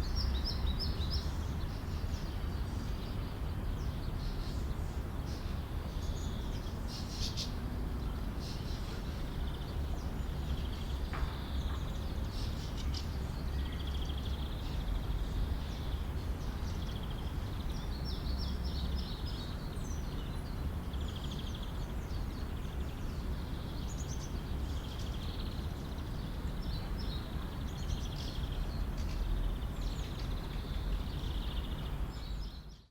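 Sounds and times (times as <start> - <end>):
small birds chirping: 0.0 - 32.9.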